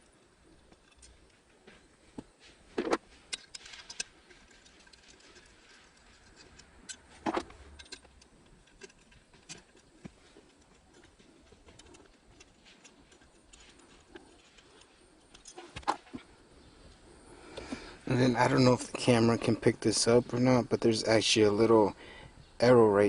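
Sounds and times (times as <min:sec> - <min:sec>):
metallic clicks of hand tools: 0:03.3 - 0:16.1.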